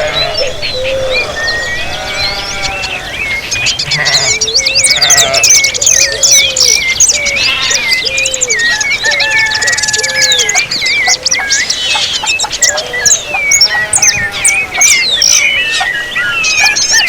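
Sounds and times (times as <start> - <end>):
songbirds chorus: 0.0 - 17.0.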